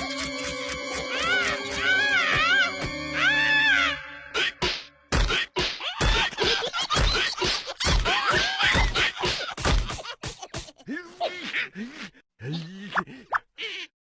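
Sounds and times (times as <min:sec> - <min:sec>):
cartoon thuds and whacks: 0:04.6 - 0:10.0.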